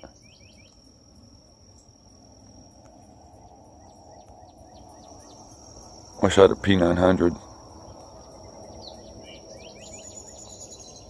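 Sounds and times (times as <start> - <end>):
insects trilling: 0.0 - 11.0
low background hum: 0.0 - 11.0.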